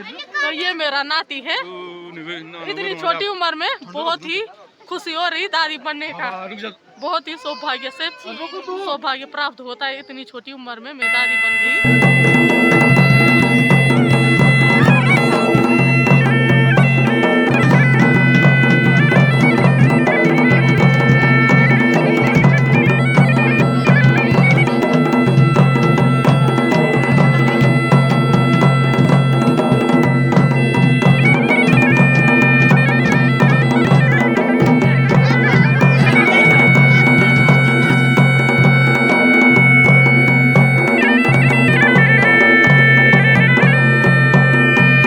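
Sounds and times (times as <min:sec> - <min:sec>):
bagpipe music with drones: 0:11.0 - 0:45.0
drum beats: 0:11.0 - 0:45.0.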